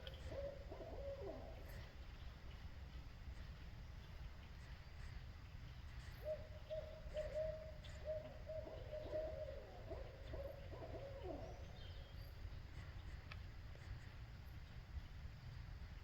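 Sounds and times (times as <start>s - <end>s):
owl hooting: 0.0s - 2.0s, 6.0s - 12.3s.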